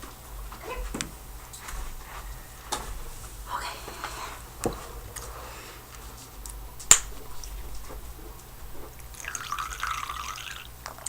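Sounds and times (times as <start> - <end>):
soft rustling: 0.0 - 9.2
faint low hum: 0.0 - 11.0.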